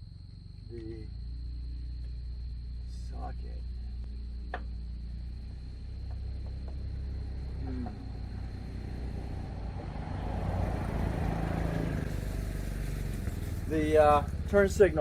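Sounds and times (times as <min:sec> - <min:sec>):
vehicle engine rumbling: 0:00.0 - 0:15.0.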